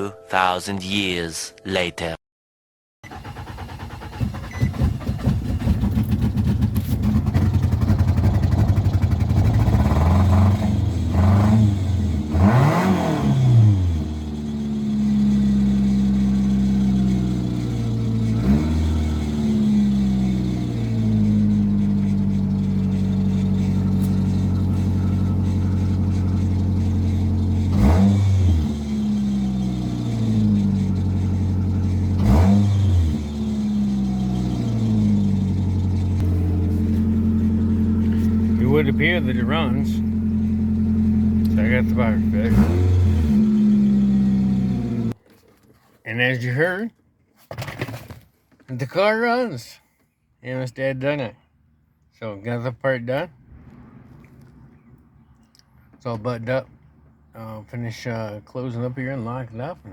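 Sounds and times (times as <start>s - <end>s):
car engine revving: 3.1s - 45.2s.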